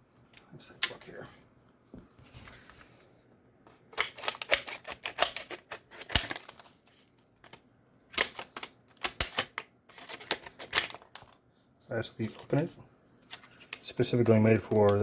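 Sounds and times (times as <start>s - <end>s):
plastic packaging being cut: 3.9s - 6.6s.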